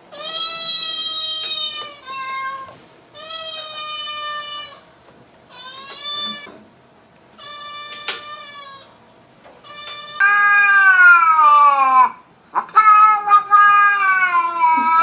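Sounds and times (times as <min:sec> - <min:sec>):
kitten meowing: 0:05.5 - 0:06.5, 0:07.4 - 0:08.9, 0:09.6 - 0:15.0.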